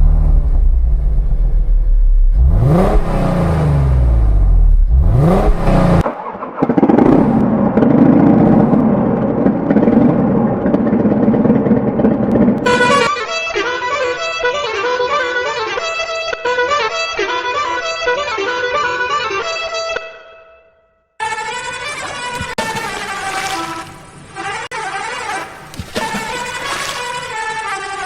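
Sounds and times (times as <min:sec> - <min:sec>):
engine running steadily: 0:00.0 - 0:06.1
truck engine revving: 0:00.0 - 0:13.1.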